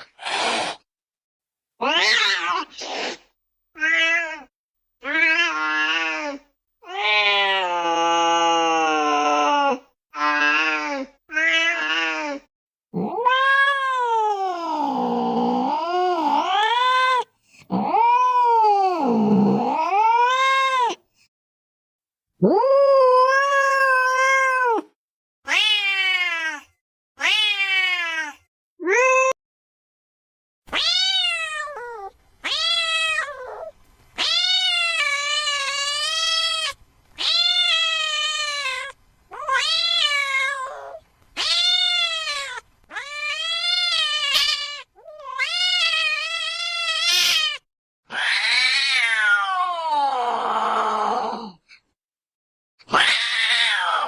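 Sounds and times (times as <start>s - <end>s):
cat meowing: 1.8s - 2.7s, 3.8s - 12.4s, 13.0s - 14.4s, 22.4s - 24.9s, 25.5s - 29.4s, 30.7s - 50.2s, 52.9s - 54.0s.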